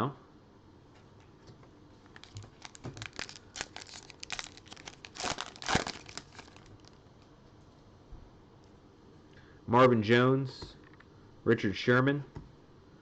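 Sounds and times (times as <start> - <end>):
foil wrapper tearing and crinkling: 2.1 - 7.0.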